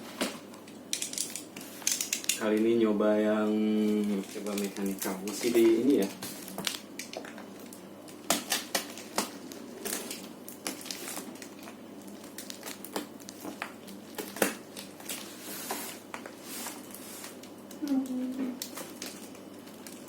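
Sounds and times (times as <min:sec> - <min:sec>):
sharp cracks and clicks: 0:00.6 - 0:02.7, 0:04.0 - 0:05.5, 0:06.6 - 0:15.2, 0:17.7 - 0:20.0
wrapping crinkling and tearing: 0:03.8 - 0:20.0.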